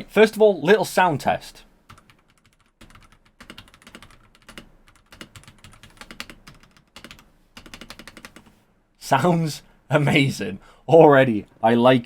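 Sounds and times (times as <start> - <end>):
mechanical keyboard keys clacking: 1.9 - 8.4.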